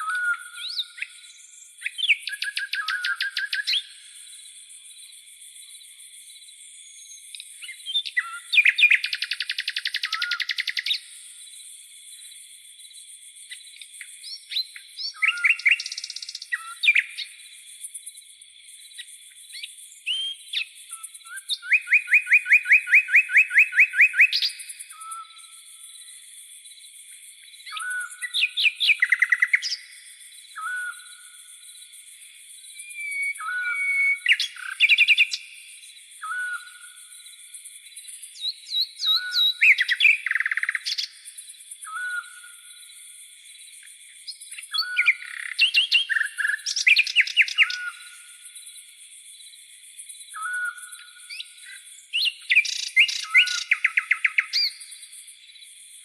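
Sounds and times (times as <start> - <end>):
crickets and cicadas chorus: 0.0 - 56.0
night birds calling: 0.0 - 56.0
fast bird trill: 52.2 - 54.7.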